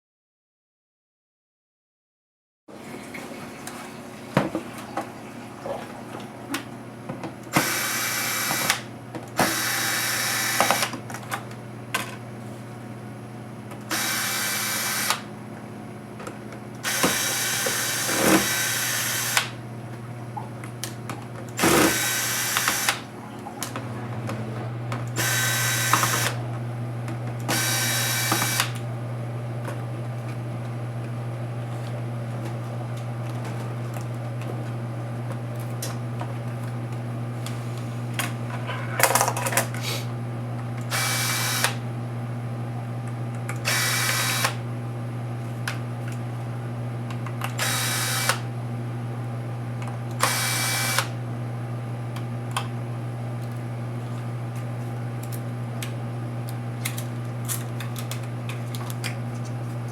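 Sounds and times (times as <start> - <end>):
small power driver bursts: 7.5 - 8.8, 9.4 - 10.9, 13.9 - 15.2, 16.8 - 19.6, 21.6 - 23.0, 25.2 - 26.4, 27.5 - 28.8, 40.9 - 41.8, 43.6 - 44.6, 47.6 - 48.4, 50.2 - 51.1.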